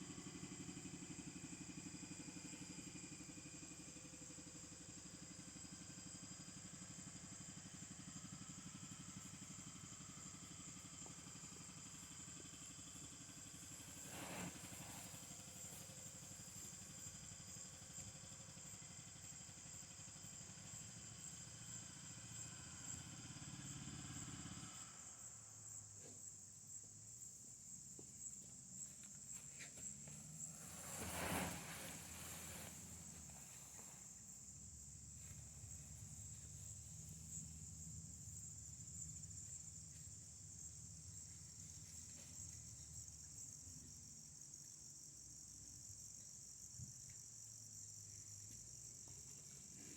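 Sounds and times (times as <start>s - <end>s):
engine running: 0.0s - 26.0s
insects trilling: 0.0s - 49.9s.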